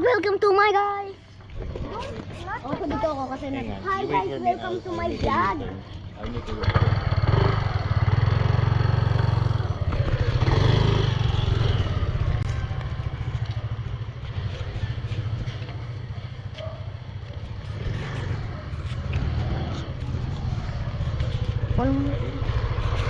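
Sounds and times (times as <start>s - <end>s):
motor scooter engine running: 6.1s - 23.0s.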